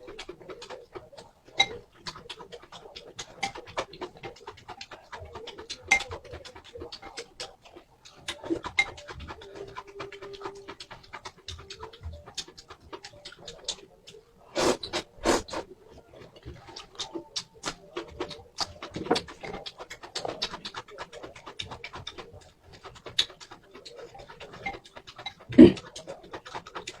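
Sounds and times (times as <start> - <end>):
wet chewing: 0.0 - 27.0
loud bites or slurps: 14.6 - 15.7.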